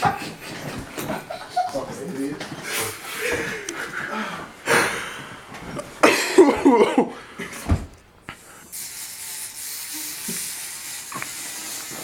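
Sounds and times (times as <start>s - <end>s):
steady hiss: 8.3s - 12.0s.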